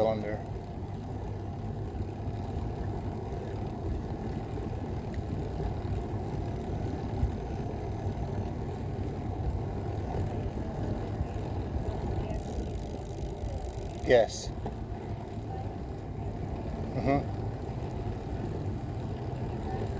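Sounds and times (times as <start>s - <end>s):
bicycle tyres on asphalt: 0.0s - 19.9s
wind buffeting microphone: 0.6s - 19.9s.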